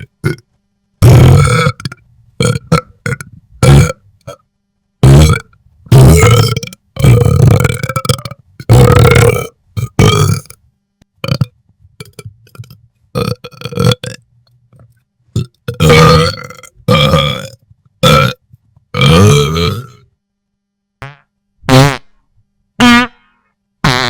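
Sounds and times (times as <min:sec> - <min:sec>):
loud low belches: 0:00.0 - 0:00.4, 0:01.0 - 0:04.4, 0:05.0 - 0:10.6, 0:11.2 - 0:14.2, 0:15.4 - 0:18.4, 0:19.0 - 0:20.0.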